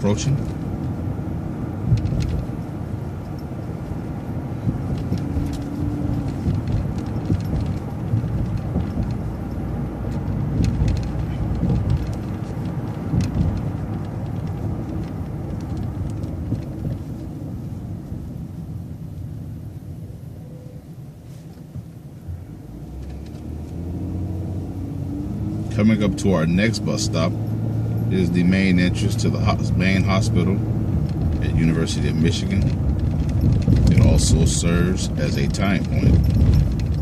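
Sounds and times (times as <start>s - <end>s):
bus engine and road rumble: 0.0s - 37.0s
rattles and clicks: 1.8s - 17.8s, 22.8s - 23.8s, 25.6s - 37.0s.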